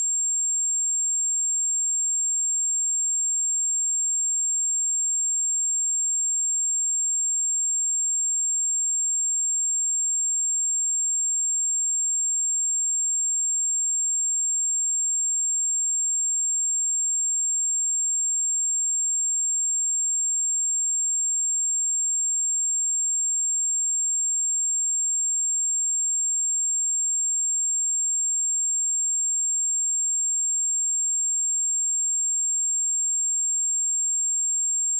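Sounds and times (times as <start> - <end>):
high-pitched sine test tone: 9.4 - 34.9.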